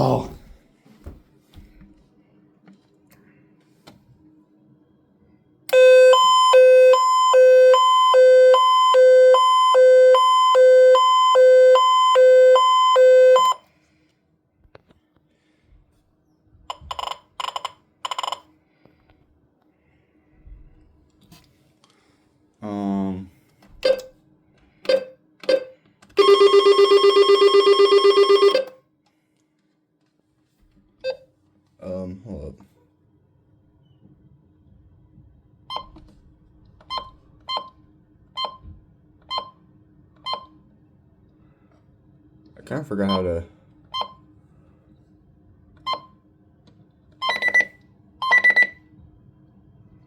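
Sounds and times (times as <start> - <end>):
electronic key-press beeps: 23.8 - 24.1, 24.9 - 28.8, 47.2 - 48.8.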